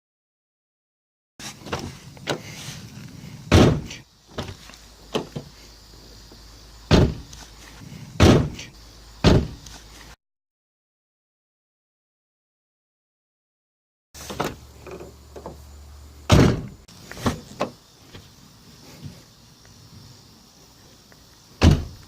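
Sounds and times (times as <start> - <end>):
car door shutting: 1.6 - 2.5, 3.5 - 5.5, 6.9 - 7.4, 8.2 - 9.7, 14.2 - 15.6, 16.3 - 18.2, 21.6 - 22.0.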